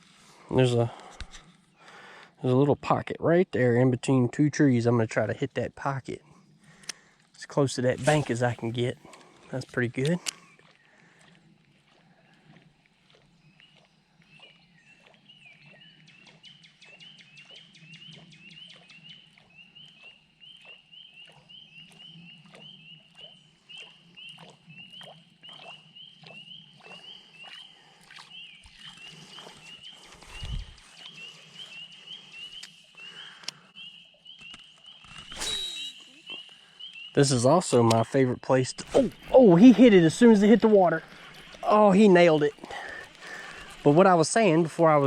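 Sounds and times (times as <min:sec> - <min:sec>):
spring peepers calling: 0:13.8 - 0:45.0
soft regular ticks: 0:38.7 - 0:44.6.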